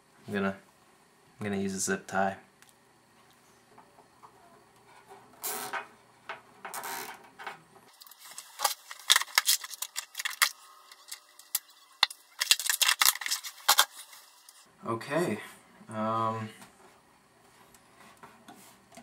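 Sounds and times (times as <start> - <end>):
plastic rustling: 7.9 - 14.7.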